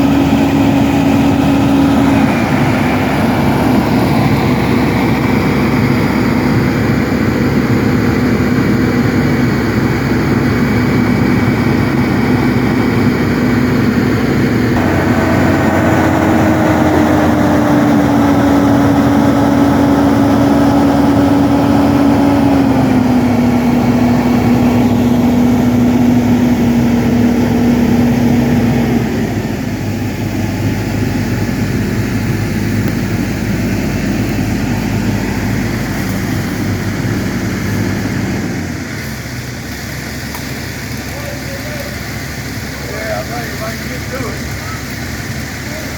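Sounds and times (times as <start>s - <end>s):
engine running hard: 0.0s - 45.9s.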